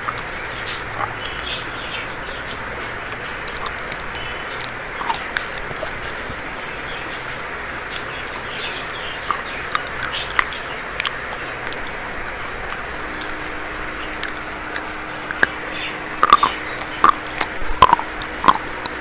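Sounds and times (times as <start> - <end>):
steady hiss: 0.0 - 19.0
chalk being bitten and crunched: 3.2 - 6.4, 7.9 - 19.0.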